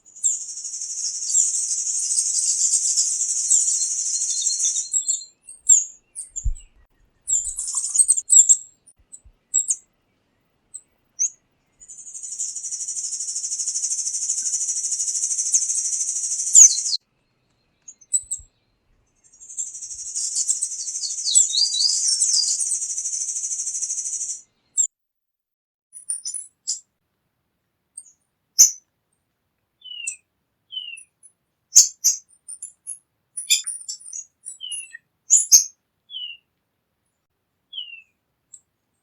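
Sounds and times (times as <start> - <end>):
bird singing high rapid trills: 0.0 - 6.6, 7.3 - 8.7, 11.2 - 17.0, 19.2 - 24.5.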